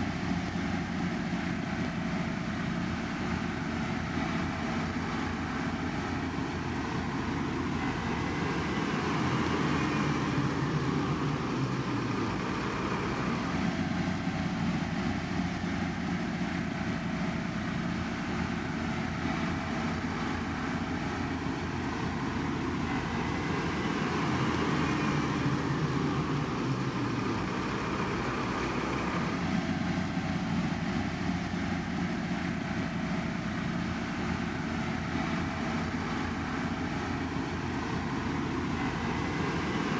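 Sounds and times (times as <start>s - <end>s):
construction machinery engines running: 0.0s - 39.9s.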